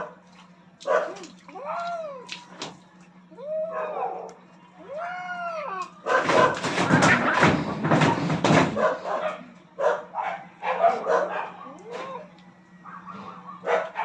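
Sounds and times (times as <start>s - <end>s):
cats yowling and screeching: 1.0s - 2.6s, 3.4s - 6.7s, 10.8s - 13.6s.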